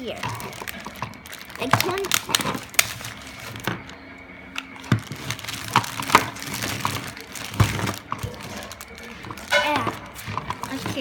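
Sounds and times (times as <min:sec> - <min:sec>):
plastic toy pieces knocking: 0:00.1 - 0:03.9.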